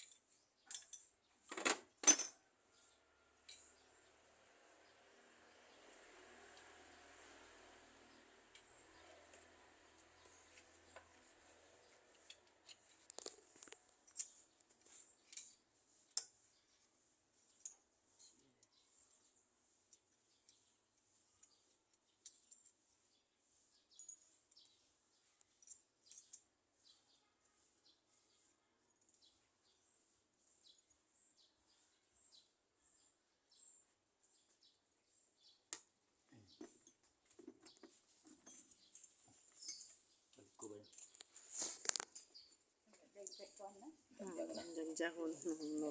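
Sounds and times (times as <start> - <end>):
light clicks and taps of metal parts: 0.0 - 2.4, 12.1 - 16.4.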